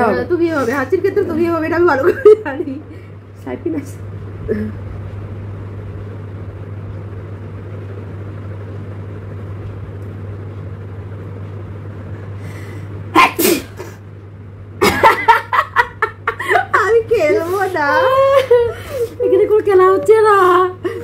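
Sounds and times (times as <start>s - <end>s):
steady low hum: 0.0s - 21.0s
loud sneeze: 13.1s - 14.0s.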